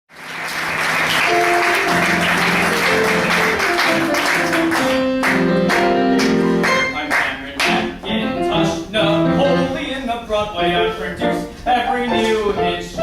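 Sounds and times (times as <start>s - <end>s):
audience applause: 0.1s - 7.4s
show tune instrumental music: 0.5s - 13.0s.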